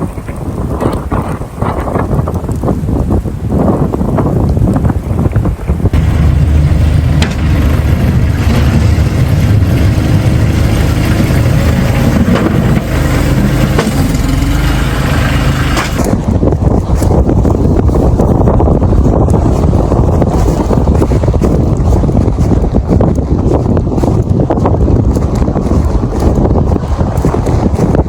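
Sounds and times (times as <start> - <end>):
wind buffeting microphone: 0.0 - 28.0
vehicle engine running: 5.9 - 28.0.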